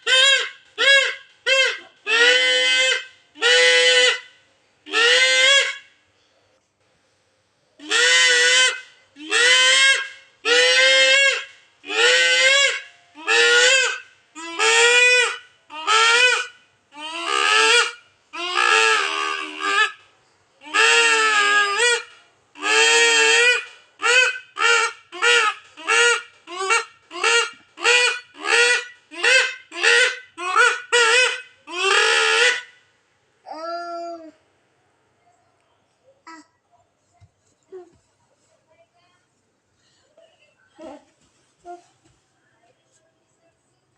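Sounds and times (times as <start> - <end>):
toy horn honking: 0.0 - 4.3, 4.9 - 5.9, 7.8 - 32.8.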